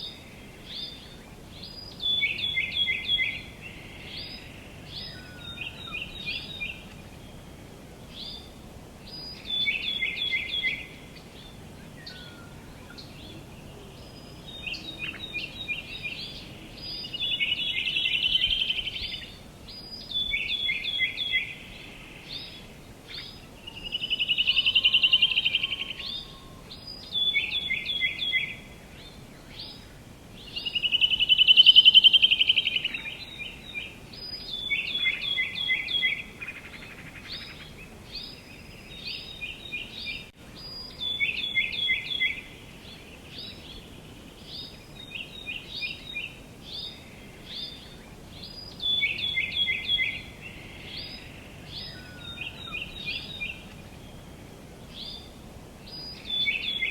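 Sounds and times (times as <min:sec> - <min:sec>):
faint outdoor hiss: 0:00.0 - 0:56.9
songbirds chirping: 0:00.0 - 0:56.9
bird trill: 0:23.2 - 0:28.6.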